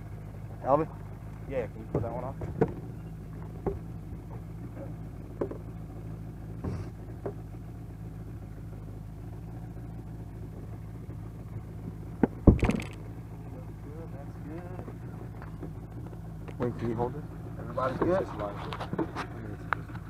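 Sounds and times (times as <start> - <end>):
outboard motor idling: 0.0 - 20.0
knocks on boat: 1.8 - 5.7, 6.6 - 7.5, 12.2 - 13.0.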